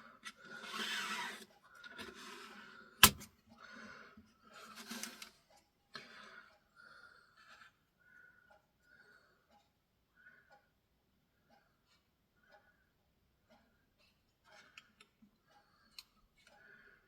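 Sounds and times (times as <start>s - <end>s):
sharp click: 3.0s - 3.3s.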